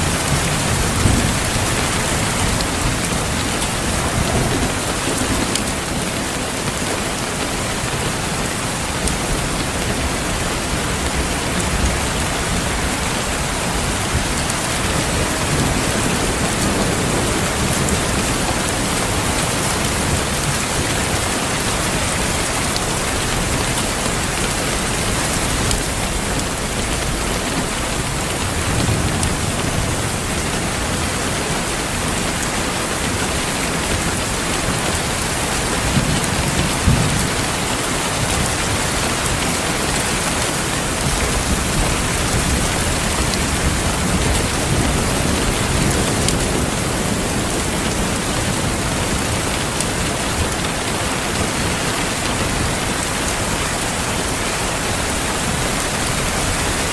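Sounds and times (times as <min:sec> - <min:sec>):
rolling thunder: 0:00.0 - 0:06.9
steady rain falling: 0:00.0 - 0:56.9.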